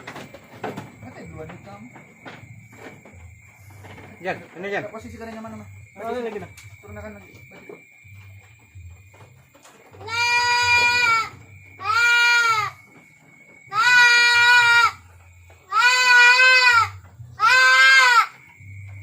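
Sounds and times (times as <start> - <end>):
goat bleating: 9.9 - 12.8, 13.7 - 18.5.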